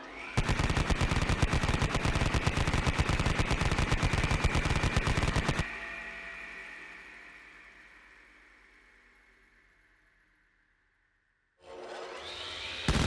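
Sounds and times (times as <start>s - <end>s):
machine gun rapid fire: 0.4s - 5.7s.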